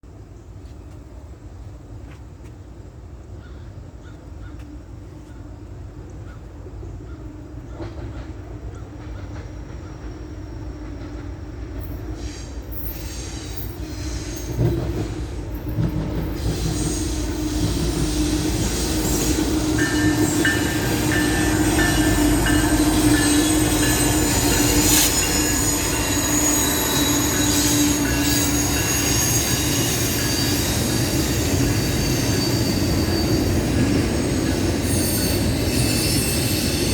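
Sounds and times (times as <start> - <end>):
low train hum: 0.0 - 36.9
train approaching: 4.3 - 36.9
high-pitched wheel squeal: 16.4 - 36.9.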